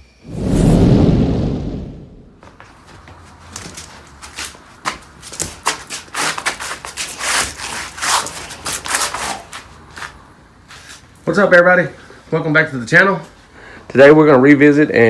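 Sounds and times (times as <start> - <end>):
handling rustles and clicks: 3.4 - 10.2.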